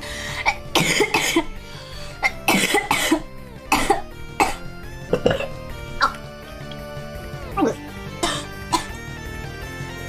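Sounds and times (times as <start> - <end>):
music playing: 0.0 - 10.0
girl coughing: 0.4 - 1.5, 2.2 - 6.2, 7.6 - 9.0.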